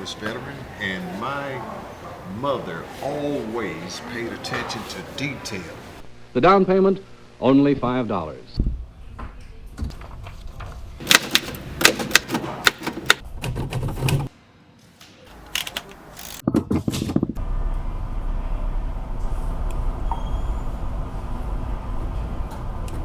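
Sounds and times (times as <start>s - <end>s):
steady low hum: 17.4s - 23.0s.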